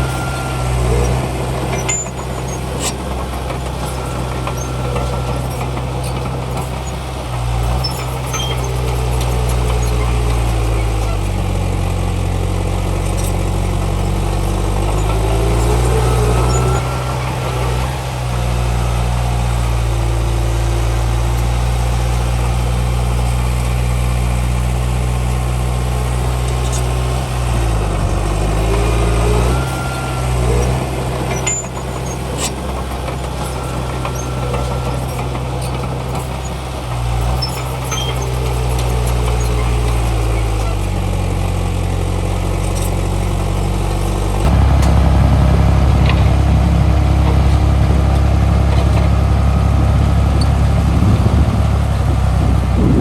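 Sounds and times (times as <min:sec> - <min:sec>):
heavy diesel engine under load: 0:00.0 - 0:53.0
faint squeals: 0:07.8 - 0:11.3, 0:14.9 - 0:19.5.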